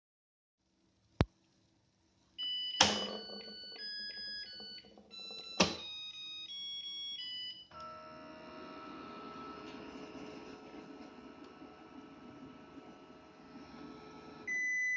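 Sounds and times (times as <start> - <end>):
rice cooker humming: 7.8 - 14.9.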